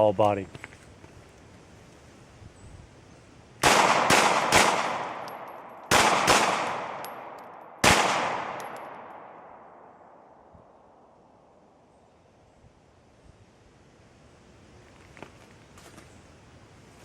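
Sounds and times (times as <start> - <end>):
pistol shots echoing: 3.6 - 10.2.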